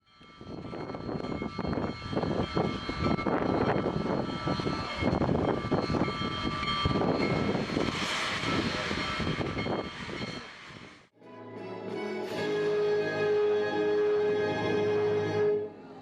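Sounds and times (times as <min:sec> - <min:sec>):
steam locomotive running: 0:00.2 - 0:11.1.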